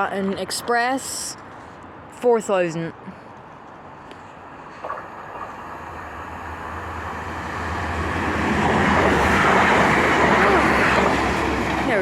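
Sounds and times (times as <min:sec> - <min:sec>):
diesel train approaching: 0:04.4 - 0:12.0.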